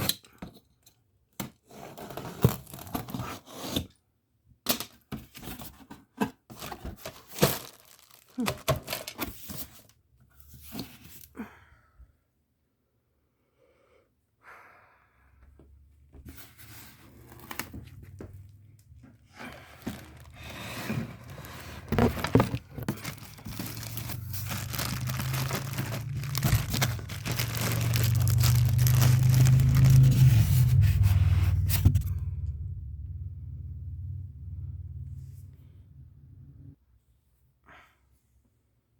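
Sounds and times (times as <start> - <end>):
packaging tearing and crinkling: 2.2 - 3.2, 6.6 - 9.6, 19.7 - 20.6, 21.2 - 31.0
low rumble: 19.8 - 36.8.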